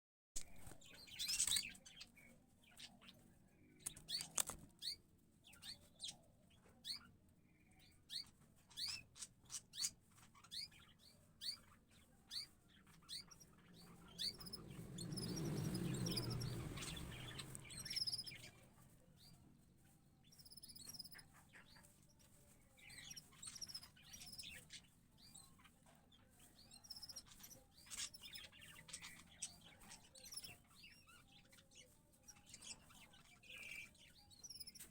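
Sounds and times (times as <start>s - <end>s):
high bird chirps: 9.7s - 18.6s, 22.8s - 25.5s, 32.3s - 34.9s.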